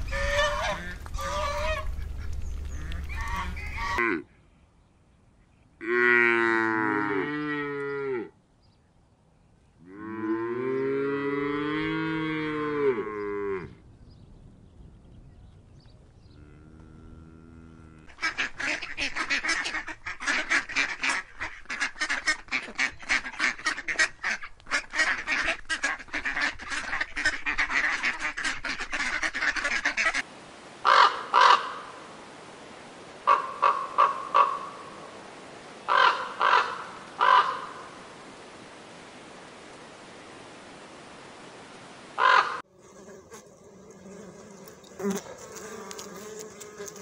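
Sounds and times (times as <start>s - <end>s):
ducks and geese quacking and honking: 0.0s - 4.2s, 18.1s - 30.3s, 33.3s - 34.6s
cow mooing: 9.9s - 13.8s, 16.4s - 18.2s
crow cawing: 30.8s - 31.9s, 33.3s - 34.8s, 35.9s - 37.9s, 42.2s - 42.6s.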